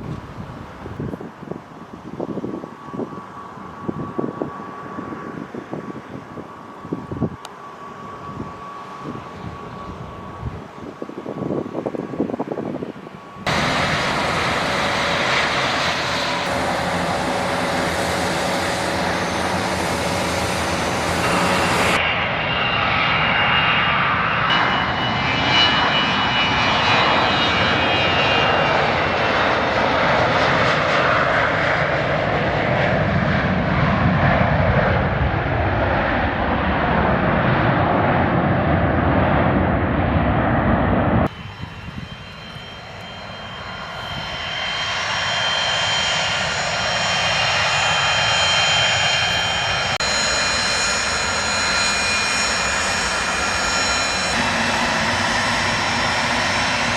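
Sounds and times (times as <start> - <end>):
airliner engines running: 0.0 - 56.9
low tone falling in pitch: 13.3 - 22.0, 40.3 - 46.8, 49.1 - 56.9.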